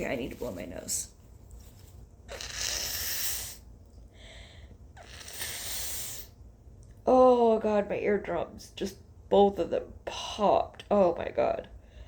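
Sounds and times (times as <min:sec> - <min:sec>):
person blowing nose: 0:02.3 - 0:03.7, 0:05.0 - 0:06.4.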